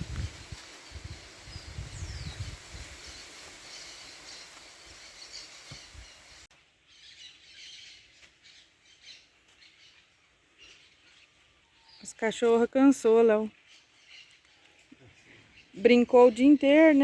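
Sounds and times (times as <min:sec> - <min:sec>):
strong wind gusting on microphone: 0:00.0 - 0:03.7
birds chirping faintly: 0:00.0 - 0:17.0.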